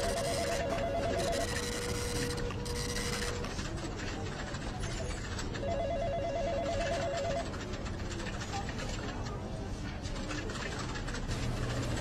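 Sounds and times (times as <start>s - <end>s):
telephone trilling: 0.0s - 3.7s, 5.5s - 7.6s.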